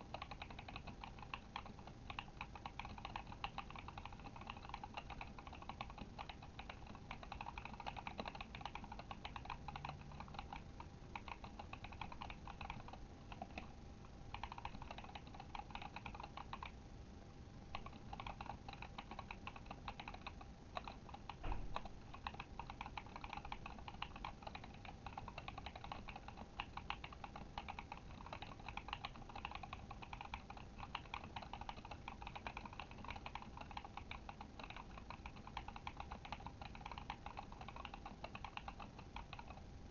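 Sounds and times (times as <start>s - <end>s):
mechanical keyboard typing: 0.0s - 13.7s, 14.3s - 16.8s, 17.7s - 39.6s
loud knock: 21.4s - 21.8s.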